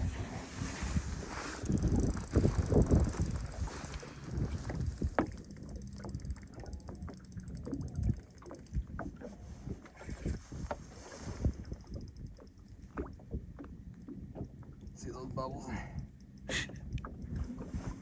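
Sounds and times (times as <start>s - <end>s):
wind gusting on microphone: 0.0s - 12.4s
small scattered knocks and clicks: 1.4s - 9.1s, 11.4s - 15.1s, 15.9s - 18.0s.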